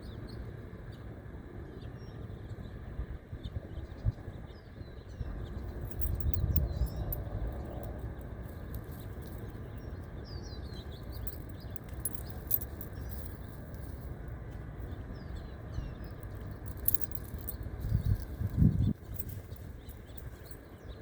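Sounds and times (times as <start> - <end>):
wind rumbling on microphone: 3.0 - 21.0
small birds chirping: 4.5 - 21.0.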